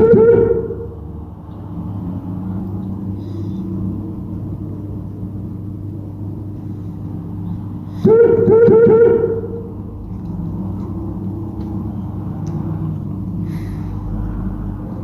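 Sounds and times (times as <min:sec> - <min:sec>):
low hum with faint rumble: 0:00.0 - 0:15.0.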